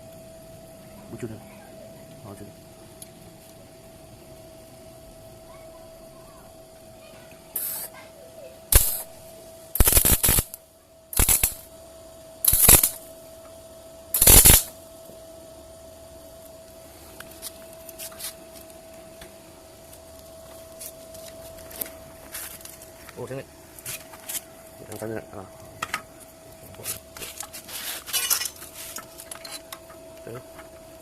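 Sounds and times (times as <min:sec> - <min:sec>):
faint steady hum: 0:00.0 - 0:31.0
arc welding bursts: 0:07.5 - 0:08.0, 0:08.7 - 0:11.7, 0:12.4 - 0:13.1, 0:14.1 - 0:14.8.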